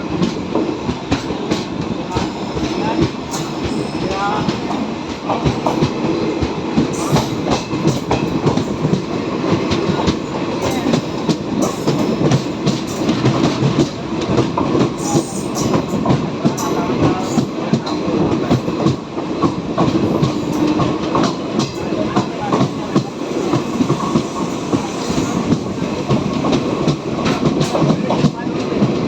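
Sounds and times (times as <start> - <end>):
train rumbling: 0.0 - 29.0.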